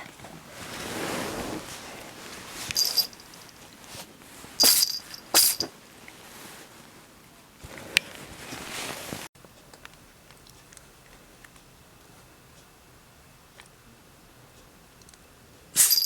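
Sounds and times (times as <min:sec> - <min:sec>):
cat sneezing: 0:04.6 - 0:05.7, 0:15.8 - 0:16.0.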